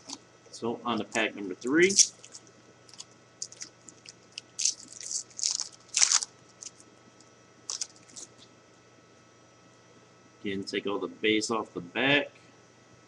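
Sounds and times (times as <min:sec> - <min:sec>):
foil wrapper tearing and crinkling: 0:01.7 - 0:06.9, 0:07.7 - 0:08.4.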